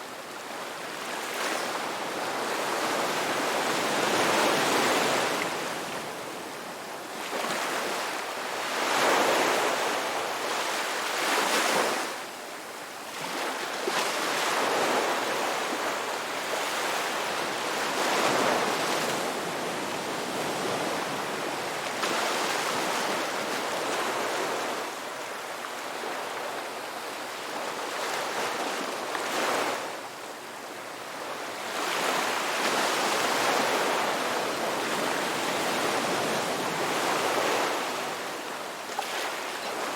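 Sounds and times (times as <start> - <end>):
ocean waves washing ashore: 13.2 - 39.9.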